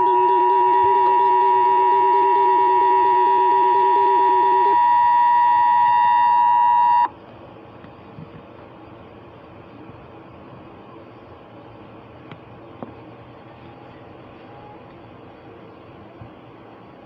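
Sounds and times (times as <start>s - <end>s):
two-tone alarm: 0.0s - 7.1s
faint hiss: 7.2s - 17.0s.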